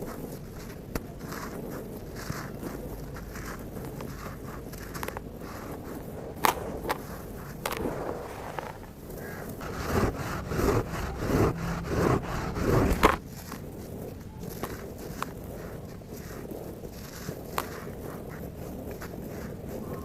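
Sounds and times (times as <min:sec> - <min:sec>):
dirt and stones crunching: 0:00.0 - 0:20.0
sharp cracks: 0:04.9 - 0:13.2.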